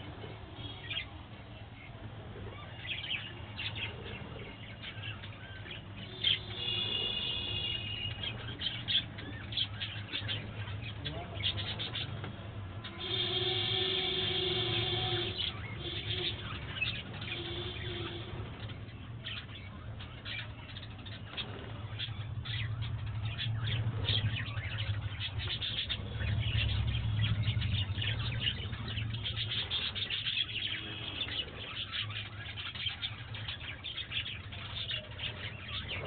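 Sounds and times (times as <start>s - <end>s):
budgerigars chirping: 1.8s - 36.0s
long held bird call: 12.8s - 18.4s.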